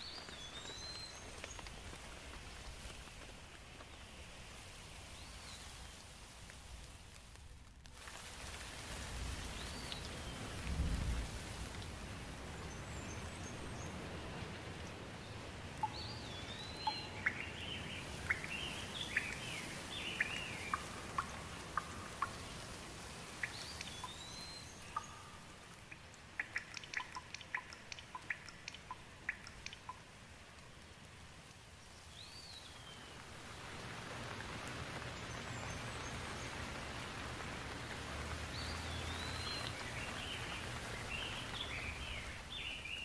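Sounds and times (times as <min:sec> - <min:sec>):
faint rain hiss: 0:00.0 - 0:43.0
water drips ticking: 0:15.6 - 0:32.6, 0:36.1 - 0:43.0.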